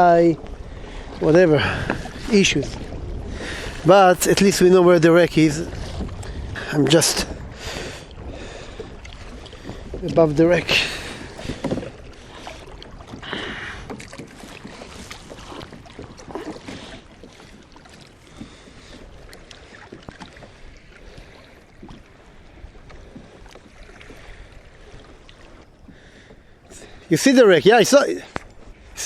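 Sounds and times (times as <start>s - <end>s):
wind rumble on microphone: 0.0s - 19.3s
water lapping against kayak hull: 0.0s - 29.0s.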